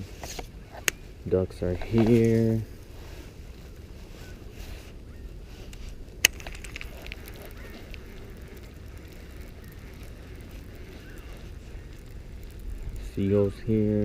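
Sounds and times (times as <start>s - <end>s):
steady low rumble: 1.1s - 14.0s
distant bird chirps: 3.5s - 14.0s.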